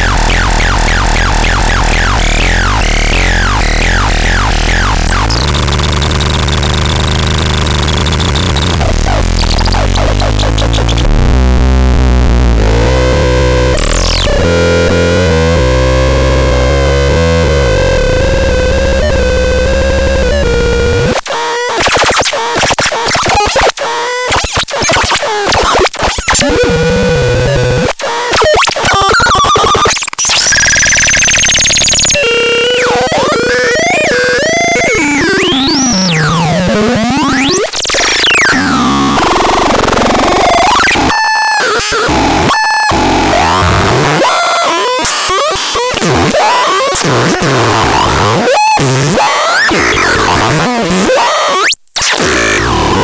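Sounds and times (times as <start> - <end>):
harsh electronic synthesizer tones: 0.0 - 53.0.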